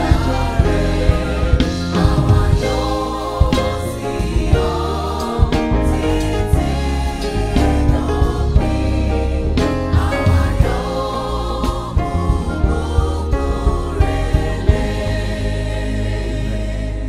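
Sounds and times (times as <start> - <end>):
live band bass and drums: 0.0 - 15.2
choir singing: 0.0 - 17.0.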